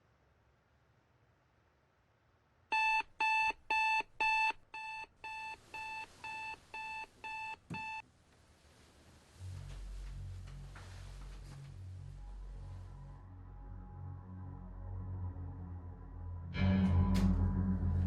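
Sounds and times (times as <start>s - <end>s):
electronic alarm beeping: 2.7s - 8.0s
low hum: 9.3s - 18.0s.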